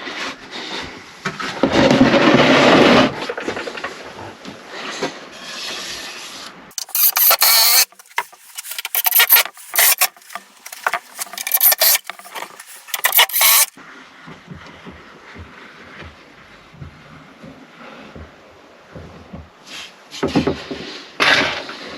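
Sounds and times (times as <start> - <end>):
wood being sanded by hand: 6.7 - 13.7.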